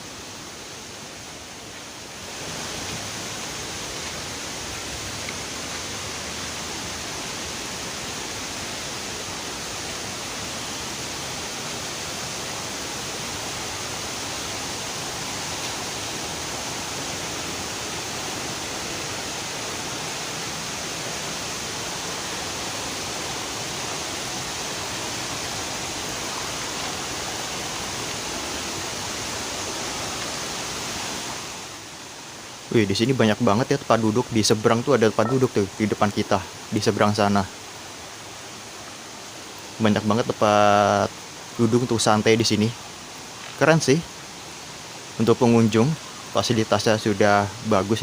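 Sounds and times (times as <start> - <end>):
waterfall and river rushing: 0.0 - 48.0.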